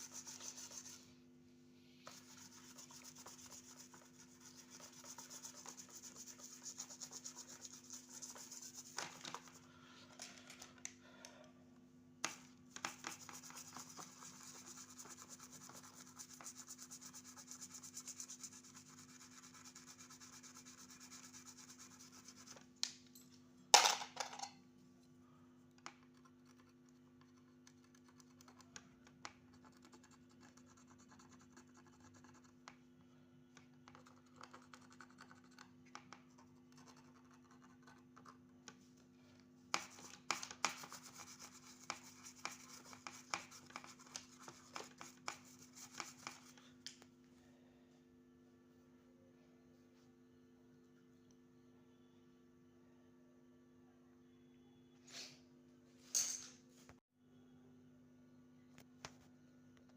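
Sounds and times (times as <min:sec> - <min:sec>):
scratching and rubbing on surface: 0:00.0 - 0:01.2, 0:02.0 - 0:10.1, 0:12.2 - 0:22.7, 0:39.8 - 0:46.6
low electrical hum: 0:00.0 - 0:59.9.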